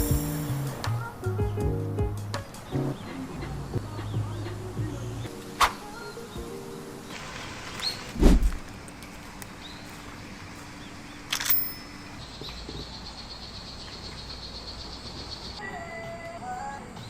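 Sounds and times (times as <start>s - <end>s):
background music held note: 0.0s - 4.1s.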